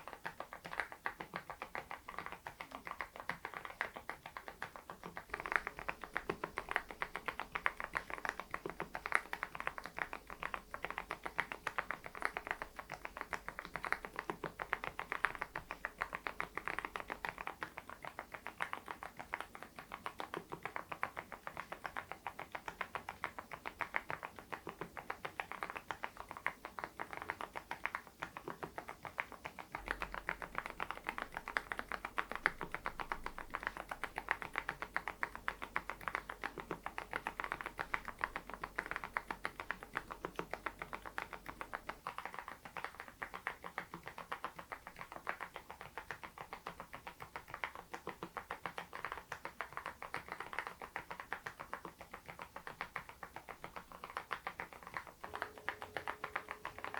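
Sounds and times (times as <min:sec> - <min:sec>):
mechanical keyboard typing: 0:53.7 - 0:56.9.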